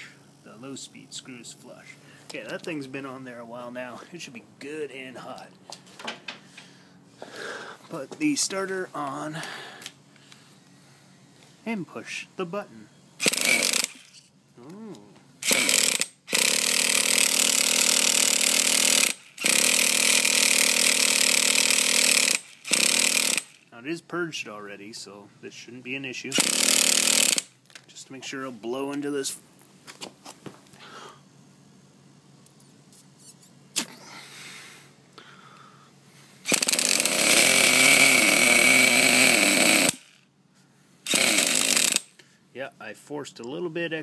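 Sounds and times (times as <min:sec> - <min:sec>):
electric starter spinning engine: 0:13.2 - 0:14.2, 0:15.4 - 0:23.7, 0:26.3 - 0:27.6, 0:36.4 - 0:40.2, 0:41.0 - 0:42.2.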